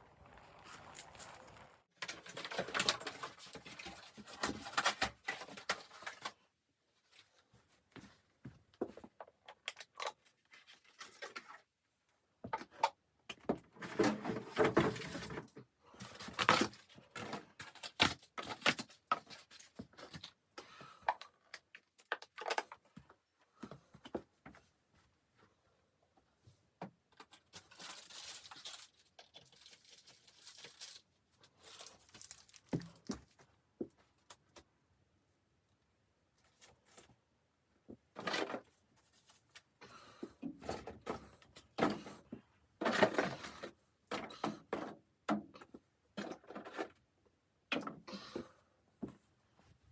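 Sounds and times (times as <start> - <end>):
rustling: 27.5 - 33.4.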